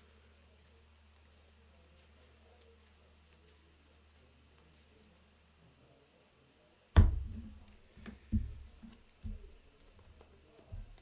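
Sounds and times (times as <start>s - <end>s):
sharp knock on a tabletop: 7.0s - 7.6s
knocks and taps on a tabletop: 7.0s - 9.5s.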